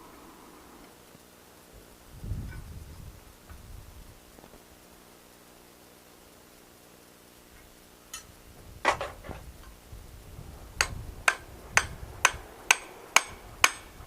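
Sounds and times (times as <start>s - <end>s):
hammer striking steel on anvil: 10.8s - 14.0s.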